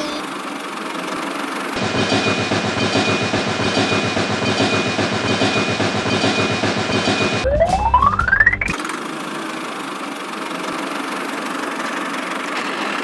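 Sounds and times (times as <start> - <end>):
mechanical chugging: 1.8 - 8.5.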